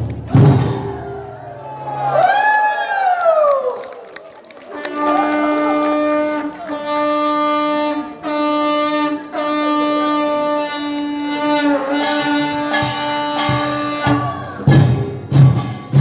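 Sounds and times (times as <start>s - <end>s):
shawm playing long notes: 4.9s - 16.0s.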